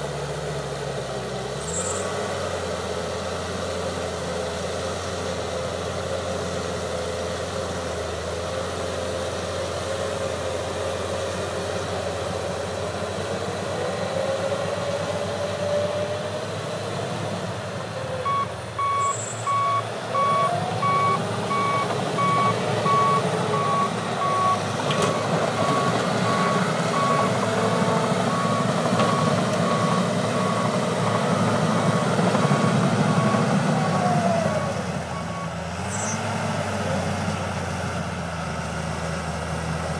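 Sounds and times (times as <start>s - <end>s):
bulldozer diesel engine: 0.0s - 39.9s
backup alarm beeping: 18.2s - 27.4s.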